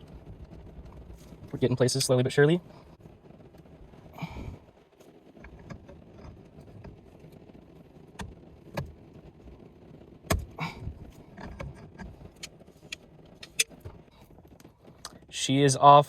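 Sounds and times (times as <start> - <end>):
hand tools clicking and knocking: 13.4 - 13.8.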